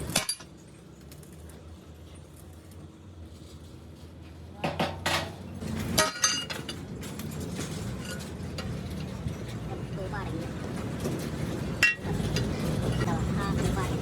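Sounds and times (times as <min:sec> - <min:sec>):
metal parts clinking: 0:00.0 - 0:00.5, 0:05.9 - 0:08.8.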